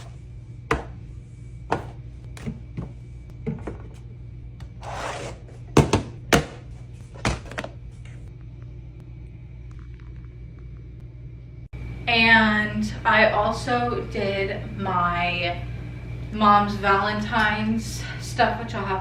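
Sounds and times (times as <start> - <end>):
objects knocking and thunking: 1.7 - 4.1, 5.6 - 7.8.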